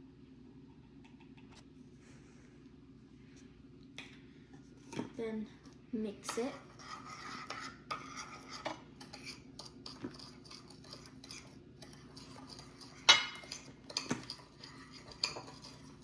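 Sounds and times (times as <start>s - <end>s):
spoon stirring in a bowl: 4.6s - 16.0s.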